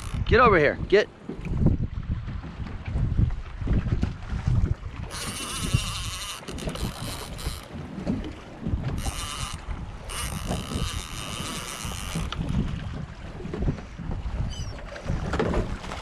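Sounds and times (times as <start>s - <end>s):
fishing reel whirring: 0.0s - 0.3s, 5.0s - 7.8s, 8.8s - 12.7s
water slapping boat: 0.0s - 16.0s
wind buffeting microphone: 0.0s - 16.0s.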